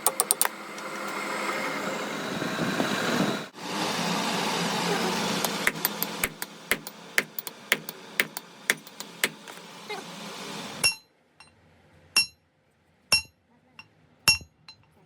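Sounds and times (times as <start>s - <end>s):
steady machine hum: 3.5s - 11.0s
hammer blows on steel: 5.6s - 9.5s
ringing metal strikes: 12.2s - 12.4s, 13.1s - 13.3s, 14.3s - 14.9s.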